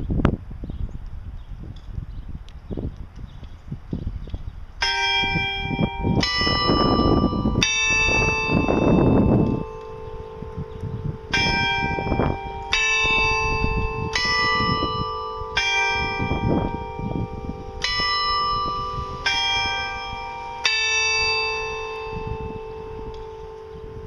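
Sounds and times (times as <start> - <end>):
carillon bells playing slow tune: 4.8 - 24.0.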